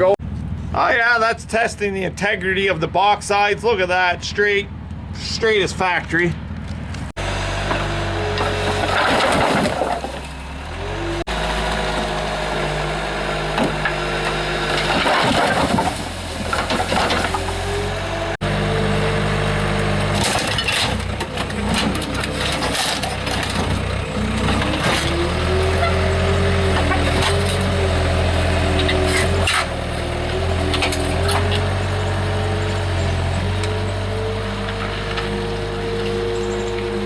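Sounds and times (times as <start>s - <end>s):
pickup engine running: 0.0s - 37.0s
knocks and crunching: 6.0s - 12.7s, 13.4s - 18.4s, 19.6s - 37.0s.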